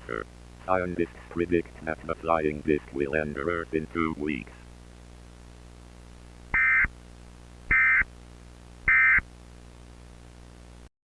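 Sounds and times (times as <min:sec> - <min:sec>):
steady low hum: 0:00.0 - 0:10.9
screeching data bursts: 0:06.6 - 0:06.9, 0:07.7 - 0:08.1, 0:08.9 - 0:09.2.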